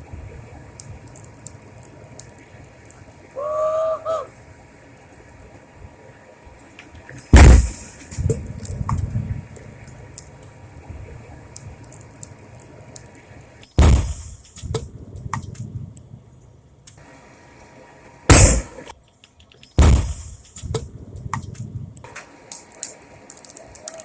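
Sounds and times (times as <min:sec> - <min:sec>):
crackling and rumbling fire: 0:00.0 - 0:03.6, 0:04.3 - 0:17.0, 0:18.3 - 0:22.2
loud explosion bangs: 0:07.3 - 0:08.4, 0:13.8 - 0:14.5, 0:18.3 - 0:18.8, 0:19.8 - 0:20.8.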